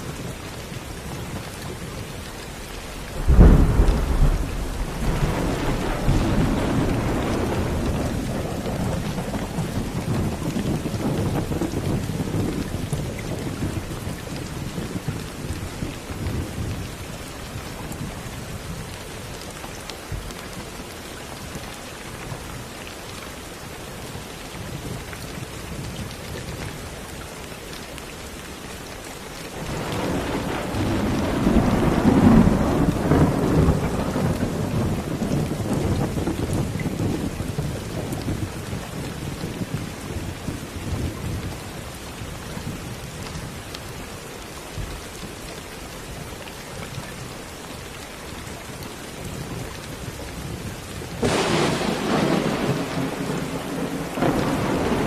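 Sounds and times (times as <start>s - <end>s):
steady rain: 0.0s - 55.0s
rolling thunder: 2.6s - 16.8s, 29.6s - 41.6s, 50.5s - 55.0s.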